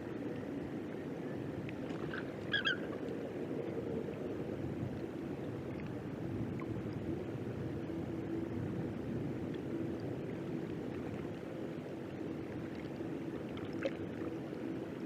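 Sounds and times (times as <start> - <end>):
high bird calls: 2.1 - 2.9.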